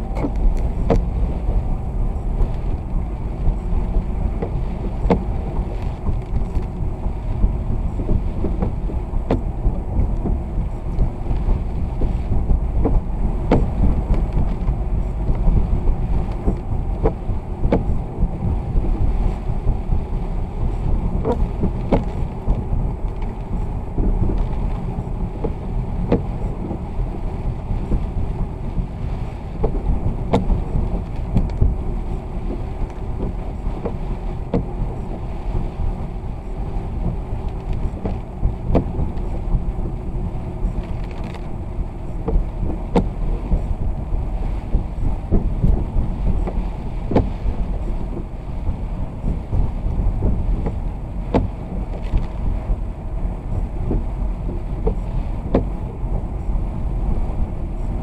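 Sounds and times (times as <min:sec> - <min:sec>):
vehicle engine and road rumble: 0:00.0 - 0:58.0.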